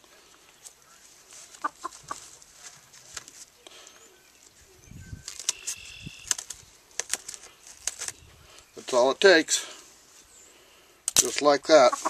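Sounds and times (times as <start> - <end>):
rustling from handling bird: 0.4 - 9.2.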